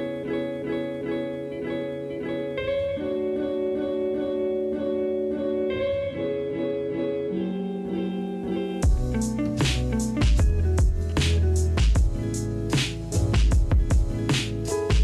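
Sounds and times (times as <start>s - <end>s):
plucked-string melody: 0.0s - 15.0s.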